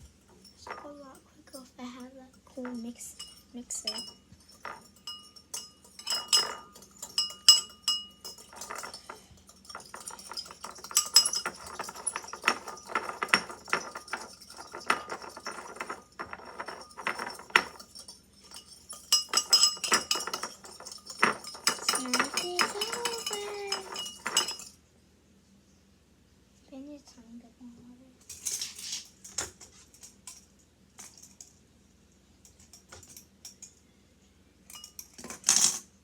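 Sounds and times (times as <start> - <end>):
metal fork clinking against bowl: 2.3 - 24.7, 34.7 - 35.8.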